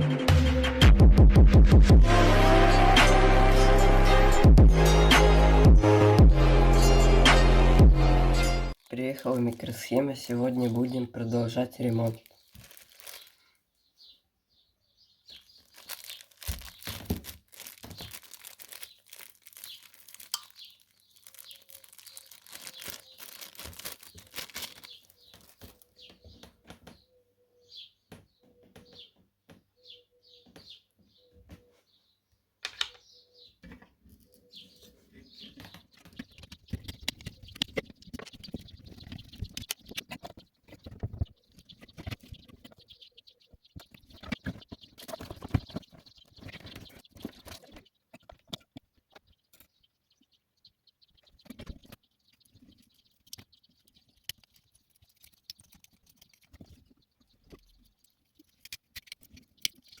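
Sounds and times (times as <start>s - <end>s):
plastic packaging crinkling and tearing: 12.1s - 13.5s, 15.3s - 25.9s.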